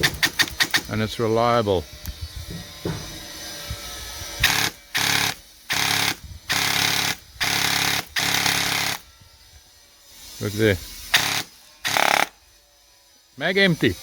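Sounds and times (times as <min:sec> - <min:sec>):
airsoft gun full-auto bursts: 0:00.0 - 0:00.9, 0:04.4 - 0:09.0, 0:11.1 - 0:12.4.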